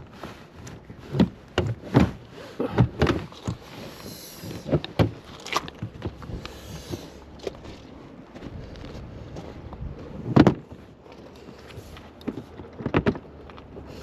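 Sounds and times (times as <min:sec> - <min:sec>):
irregular thumps and knocks: 0:04.5 - 0:07.1, 0:10.3 - 0:10.8.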